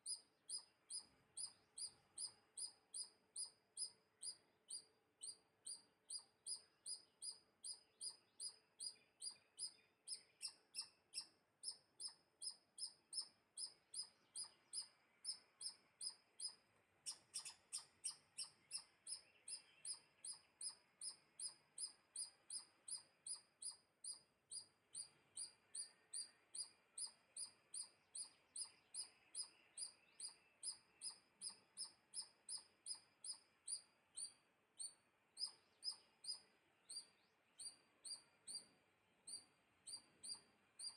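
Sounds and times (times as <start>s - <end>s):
small bird chirping: 0.0s - 40.9s.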